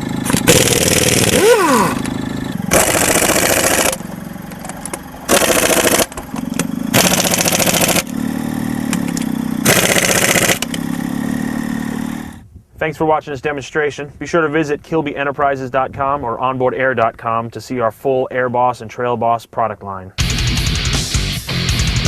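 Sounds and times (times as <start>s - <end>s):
pneumatic air tool bursts: 0.0s - 12.4s
engine and compressor hum: 0.0s - 12.7s.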